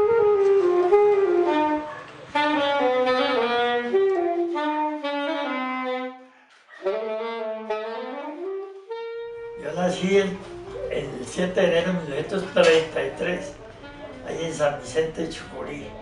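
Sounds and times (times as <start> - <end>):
wind instrument solo melody: 0.0 - 11.2.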